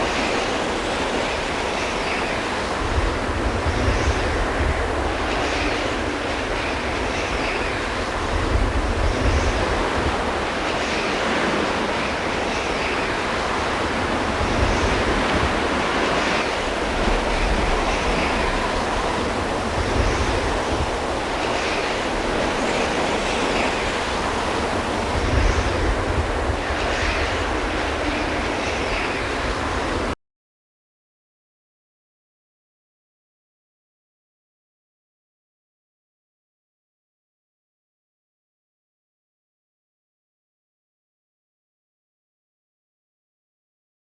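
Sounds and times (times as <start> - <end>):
blizzard wind blowing: 0.0 - 30.2.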